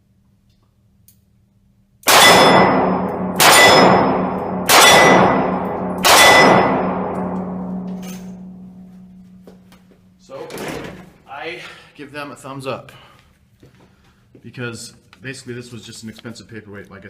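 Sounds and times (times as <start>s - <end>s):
loud metallic clangs: 2.1s - 9.4s.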